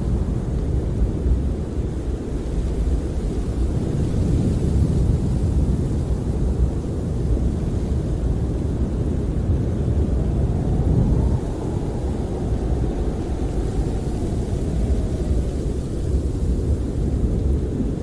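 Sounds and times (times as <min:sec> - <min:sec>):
wind blowing against a camper: 0:00.0 - 0:18.0.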